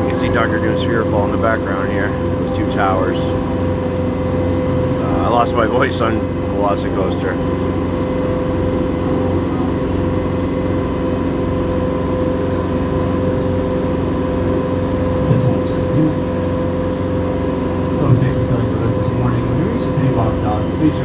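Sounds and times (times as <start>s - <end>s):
boat engine droning: 0.0s - 21.0s.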